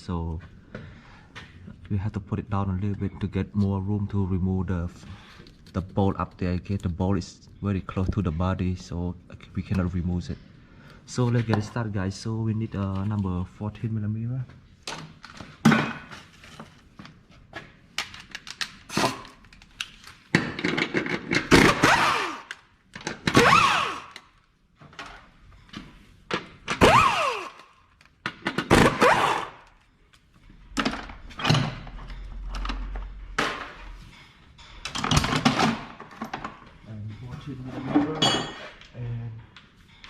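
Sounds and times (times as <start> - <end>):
metal tools clanking and scraping: 31.1 - 38.9.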